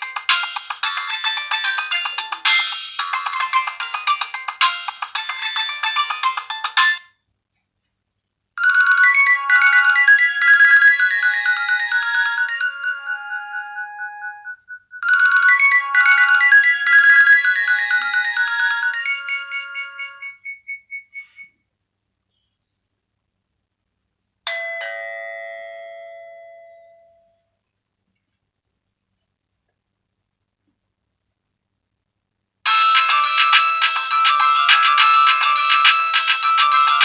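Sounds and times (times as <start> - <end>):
electronic melodic ringtone: 0.0 - 7.0, 8.6 - 21.4, 32.7 - 37.0
busy ringtone: 0.0 - 7.1, 8.6 - 21.4, 32.7 - 37.0.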